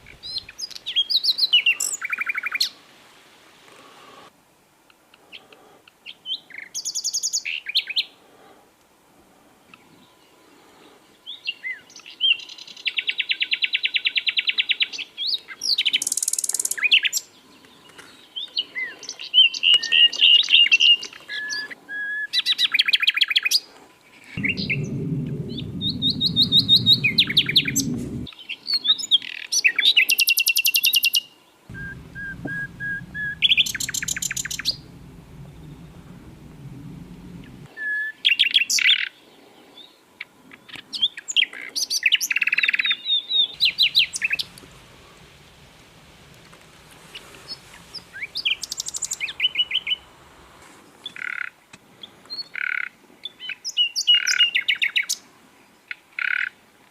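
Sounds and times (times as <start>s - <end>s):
low background rumble: 24.4s - 28.3s, 31.7s - 37.7s, 43.6s - 50.6s
bird singing trills and whistles: 31.8s - 38.9s.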